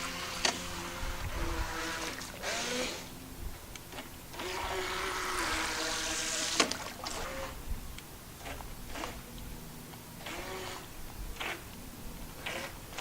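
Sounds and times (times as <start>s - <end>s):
electric motor whirring: 0.0s - 3.2s, 3.8s - 7.6s, 8.4s - 9.4s, 10.2s - 13.0s
water spray hissing: 4.3s - 7.5s.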